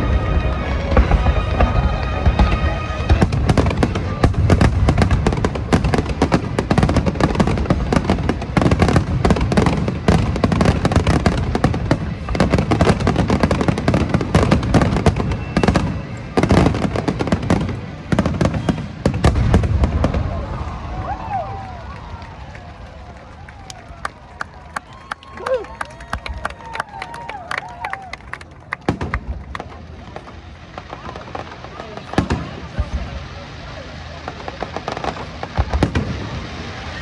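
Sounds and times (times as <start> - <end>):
music playing: 0.0 - 4.5
fireworks booming and crackling: 0.0 - 27.4, 28.4 - 37.0.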